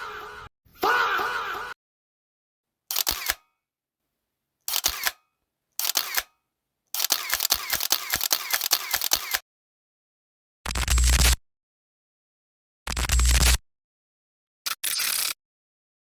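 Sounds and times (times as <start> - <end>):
sharp mechanical clicks: 2.9 - 3.4, 4.7 - 5.2, 5.8 - 6.3, 7.0 - 9.4.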